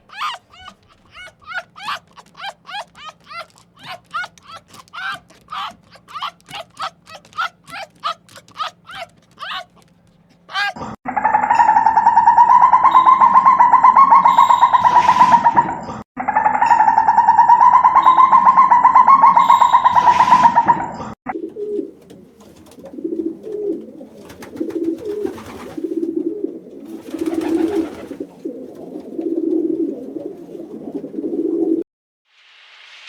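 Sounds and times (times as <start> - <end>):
loud pulsing fluttering call: 0.0 - 9.9
pigeons cooing: 0.0 - 10.9, 21.3 - 31.8.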